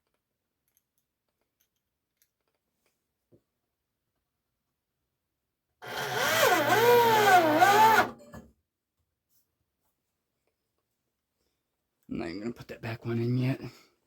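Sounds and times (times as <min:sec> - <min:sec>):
power drill running: 0:05.8 - 0:08.2.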